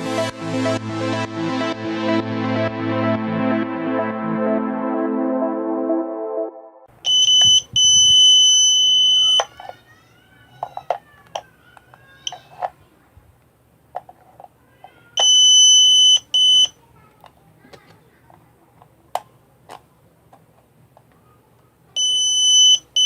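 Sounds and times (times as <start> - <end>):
background music: 0.0 - 6.9
piezo buzzer alarm beeping: 7.0 - 9.5, 15.2 - 16.7, 22.0 - 23.0.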